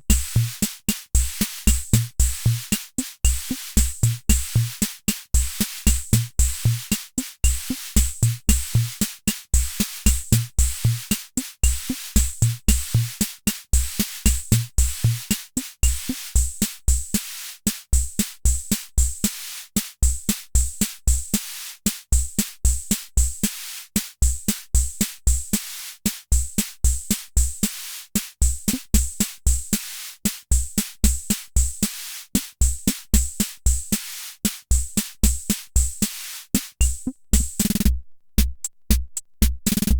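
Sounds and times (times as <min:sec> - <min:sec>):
drum machine bass drum thumps: 0:00.0 - 0:16.5, 0:28.4 - 0:29.8, 0:32.6 - 0:39.9
drum machine cymbal hits: 0:00.1 - 0:04.8, 0:36.6 - 0:39.9.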